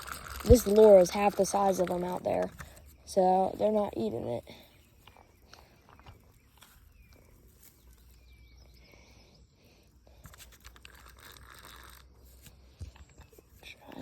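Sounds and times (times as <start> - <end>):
fishing reel clicking: 0.0 - 1.8
outdoor ambience: 0.0 - 14.0.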